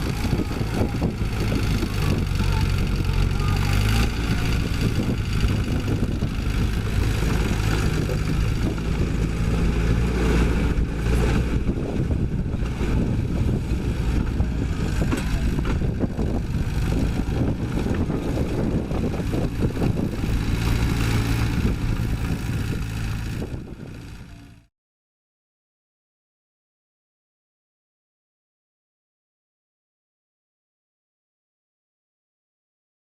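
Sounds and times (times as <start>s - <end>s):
diesel machine engine running: 0.0s - 24.7s.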